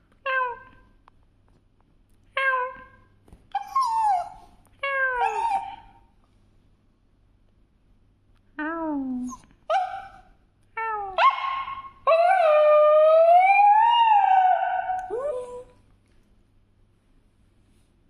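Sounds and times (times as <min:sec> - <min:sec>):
dog whining yelps: 0:03.5 - 0:06.0, 0:09.3 - 0:10.3, 0:11.2 - 0:15.6
dog howling: 0:11.2 - 0:15.6.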